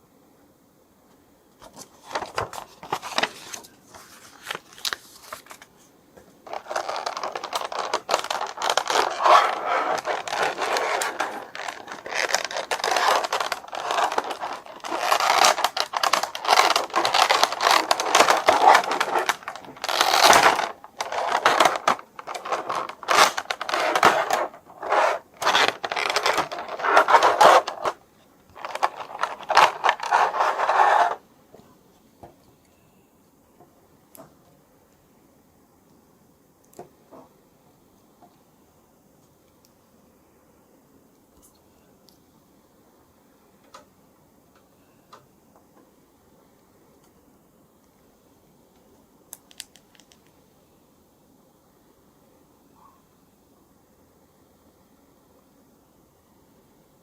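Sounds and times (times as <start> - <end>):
packaging scraping and rustling: 1.6 - 5.7, 6.4 - 31.2.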